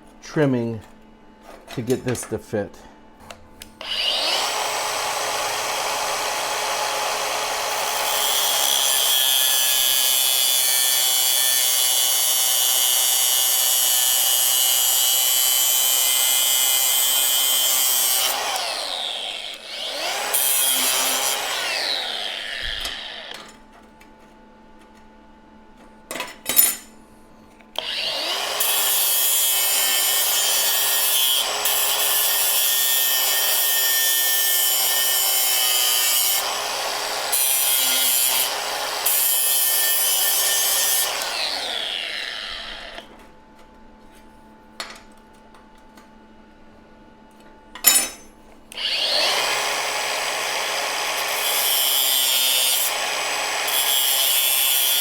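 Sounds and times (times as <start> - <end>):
grinder grinding steel: 3.8 - 23.6, 27.8 - 43.1, 48.0 - 55.0.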